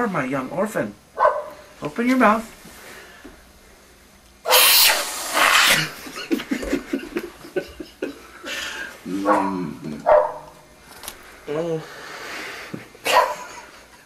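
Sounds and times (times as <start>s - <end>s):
aerosol can spraying: 4.5s - 5.9s.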